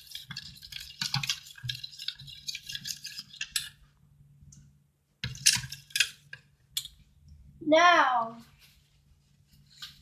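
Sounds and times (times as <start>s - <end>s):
utensil scraping a bowl: 0.0s - 3.8s.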